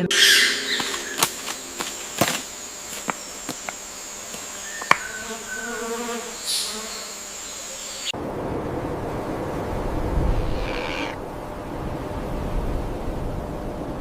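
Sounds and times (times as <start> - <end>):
high-pitched insect drone: 0.0 - 8.1.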